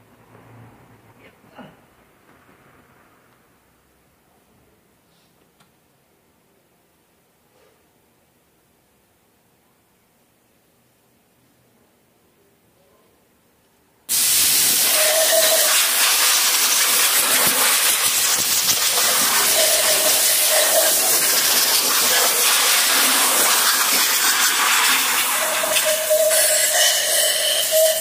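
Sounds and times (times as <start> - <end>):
loud hiss of rushing air: 14.1 - 28.0.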